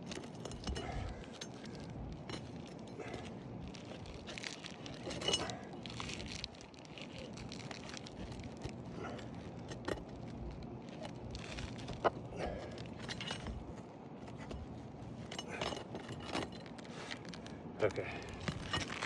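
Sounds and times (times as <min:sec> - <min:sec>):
scraping and crinkling of shingles: 0:00.0 - 0:19.0.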